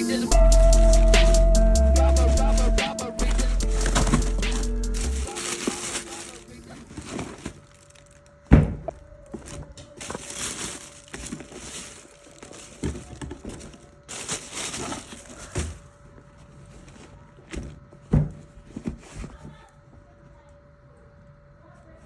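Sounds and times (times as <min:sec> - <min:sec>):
packaging rustling: 0:00.3 - 0:19.7
box thumps: 0:03.2 - 0:07.6, 0:08.5 - 0:11.9, 0:17.5 - 0:19.6.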